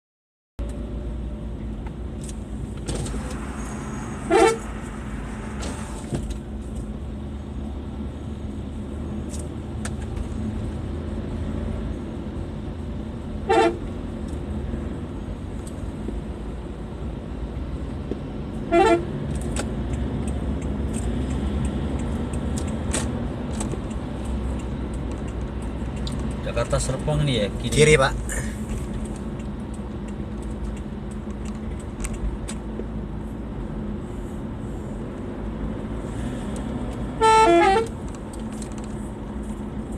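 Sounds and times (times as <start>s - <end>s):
road and engine noise: 0.6s - 39.9s
musical car horn blasts: 4.1s - 4.8s, 13.4s - 13.8s, 18.7s - 19.1s, 37.2s - 37.9s.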